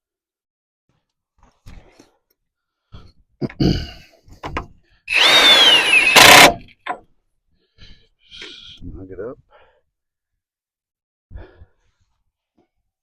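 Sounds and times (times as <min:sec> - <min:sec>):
power tool motor whine: 0:05.1 - 0:06.7.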